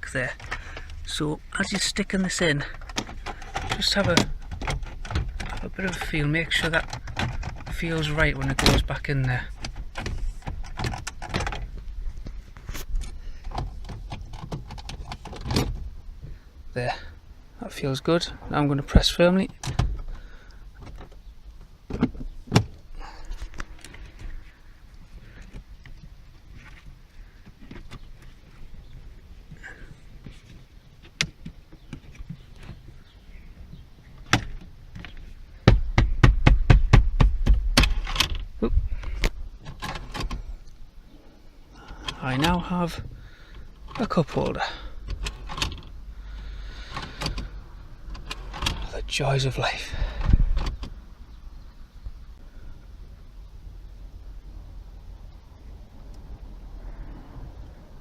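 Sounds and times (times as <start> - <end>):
plastic trim rattling and scraping: 0.3 - 11.9, 12.6 - 15.9, 41.8 - 50.9.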